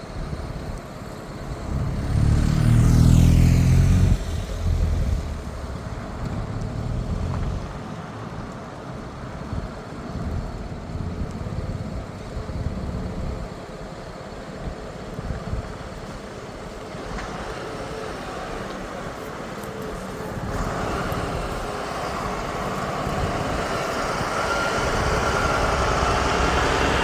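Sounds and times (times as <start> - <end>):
low traffic rumble: 0.0 - 27.0
heavy vehicle driving past: 0.4 - 11.7, 16.8 - 27.0.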